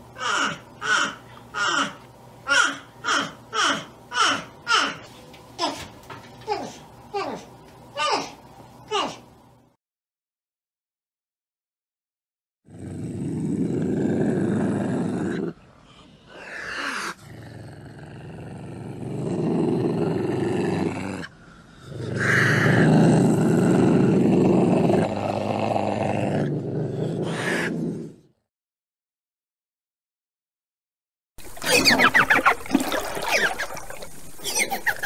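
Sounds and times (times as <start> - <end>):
large animal roaring and growling: 12.7 - 15.6, 16.4 - 28.3.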